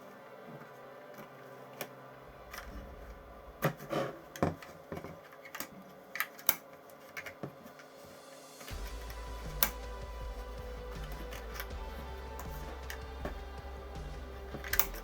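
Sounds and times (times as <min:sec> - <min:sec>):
objects clicking and knocking: 0:03.6 - 0:15.0.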